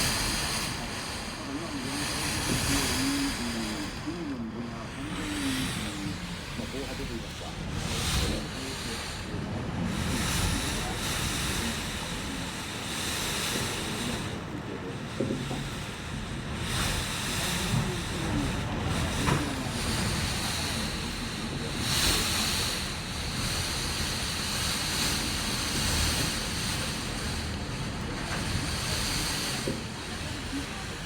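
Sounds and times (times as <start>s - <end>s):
strong wind gusting: 0.0s - 31.0s
wind buffeting microphone: 0.0s - 31.0s.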